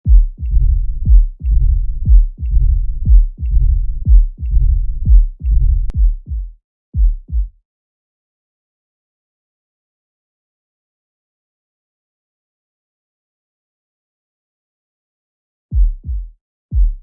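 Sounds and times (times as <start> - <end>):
sharp heartbeat: 0.0 - 7.6, 15.7 - 17.0
low rumbling heart murmur: 0.1 - 7.5.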